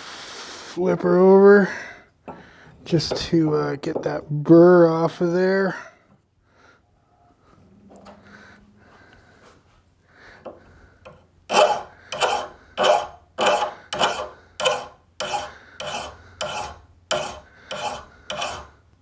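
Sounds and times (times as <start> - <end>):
file rasping on steel blade: 11.5 - 18.8.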